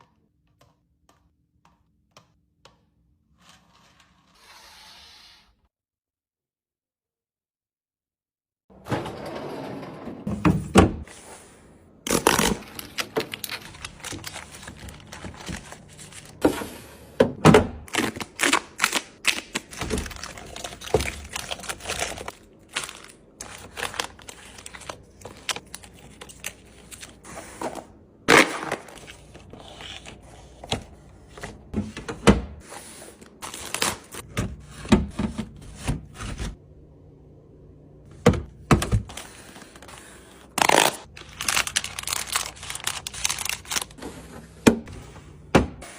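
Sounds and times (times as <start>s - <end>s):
food packages knocking and clattering: 19.4s - 25.7s.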